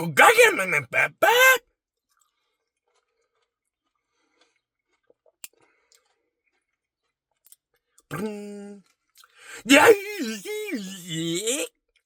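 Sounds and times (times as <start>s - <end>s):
chewing ice cream: 2.0s - 8.2s, 8.8s - 9.4s.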